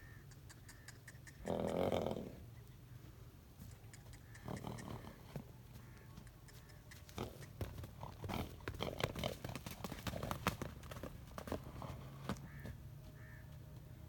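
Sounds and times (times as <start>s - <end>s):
horse hooves striking ground: 3.0s - 14.0s.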